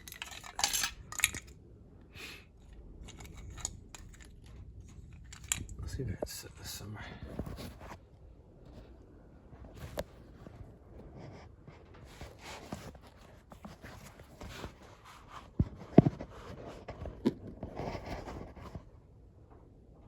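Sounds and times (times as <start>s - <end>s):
metal parts rubbing and scraping: 0.0s - 1.6s, 3.0s - 5.8s.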